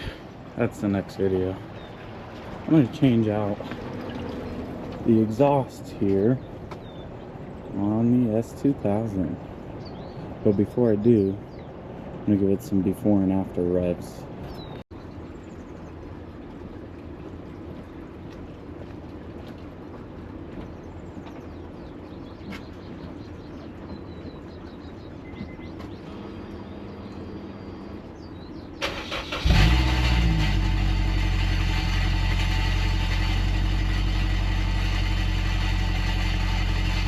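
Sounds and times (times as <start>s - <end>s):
car engine cranking and idling: 28.8s - 37.0s.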